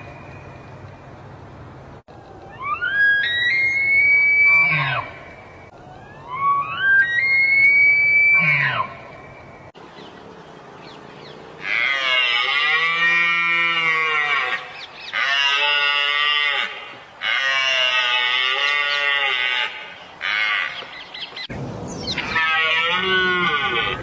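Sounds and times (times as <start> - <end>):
elk calling: 6.2 - 9.2, 22.1 - 24.0.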